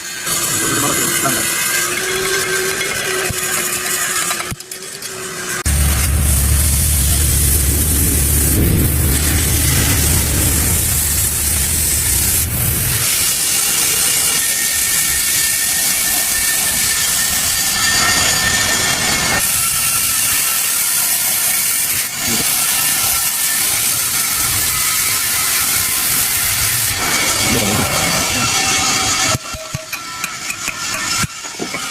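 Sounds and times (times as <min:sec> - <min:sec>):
welding arc hissing and crackling: 0:00.0 - 0:31.9
low hum: 0:05.7 - 0:13.0.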